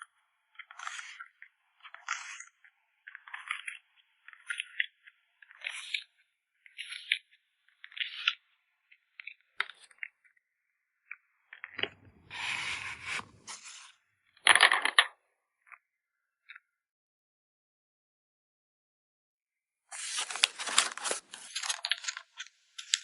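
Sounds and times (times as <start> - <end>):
plastic rustling: 20.0 - 22.3
plastic packaging crinkling: 20.0 - 23.0.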